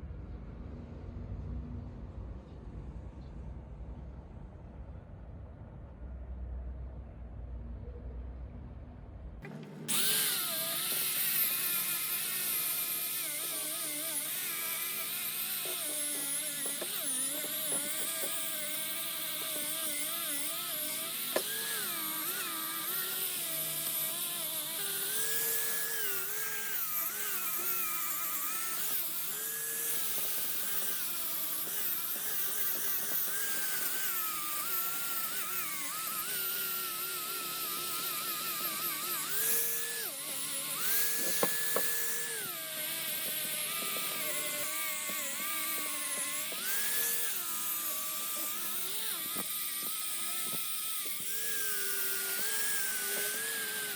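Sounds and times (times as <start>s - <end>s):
small electric rotary tool running: 9.5s - 53.9s.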